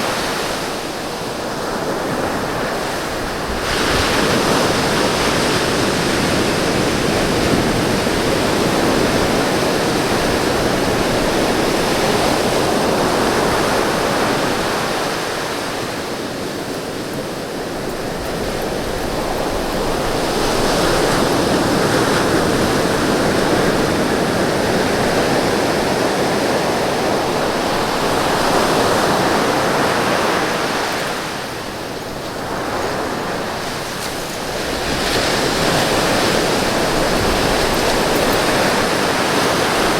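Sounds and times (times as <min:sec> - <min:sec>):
ocean surf breaking: 0:00.0 - 0:39.9.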